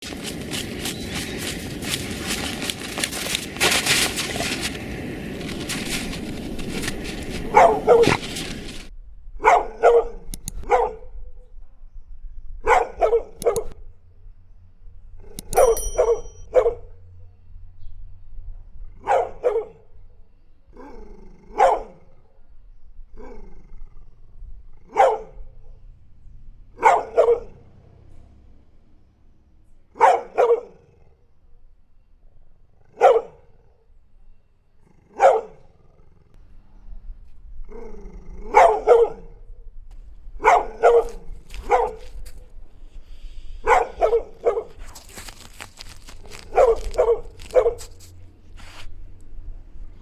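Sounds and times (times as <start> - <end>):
noisy rushing with clicks: 0.0 - 8.9
dog barking: 7.5 - 8.4, 9.4 - 11.2, 12.6 - 13.8, 15.3 - 17.0, 19.0 - 20.0, 20.8 - 22.2, 24.8 - 25.6, 26.8 - 28.0, 29.9 - 31.2, 32.8 - 33.7, 35.0 - 35.8, 38.4 - 39.4, 40.2 - 42.6, 43.5 - 48.9.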